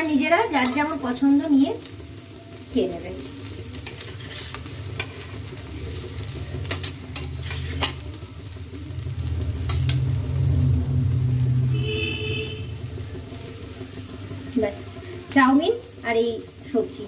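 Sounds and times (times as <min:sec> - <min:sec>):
metal utensil scraping a pan: 0:00.5 - 0:01.2, 0:03.7 - 0:08.2, 0:09.6 - 0:10.1.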